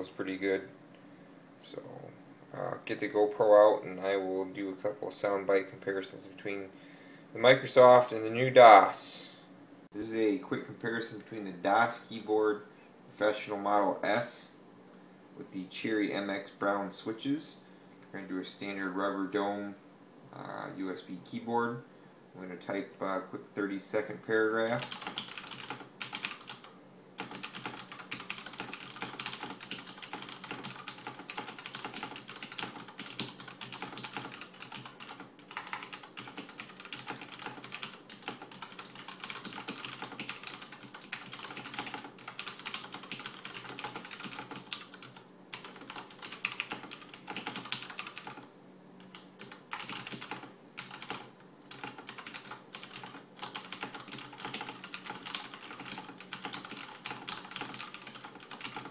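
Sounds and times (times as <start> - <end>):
faint steady hum: 0.0 - 58.9
fast typing on mechanical keyboard: 24.7 - 48.5, 49.1 - 58.9.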